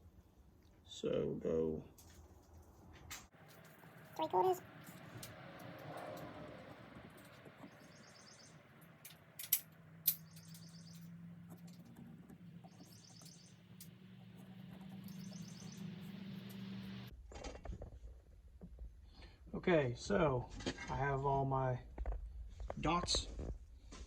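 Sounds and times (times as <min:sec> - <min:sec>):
bird chirping: 0:03.4 - 0:17.1
low steady hum: 0:03.4 - 0:17.1
sharp clicks: 0:08.9 - 0:17.1.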